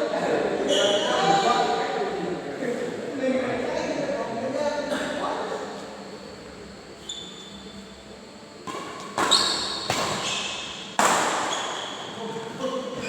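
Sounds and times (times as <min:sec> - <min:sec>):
shoe squeaks on court: 0:00.7 - 0:01.1, 0:07.0 - 0:07.8, 0:09.0 - 0:13.0.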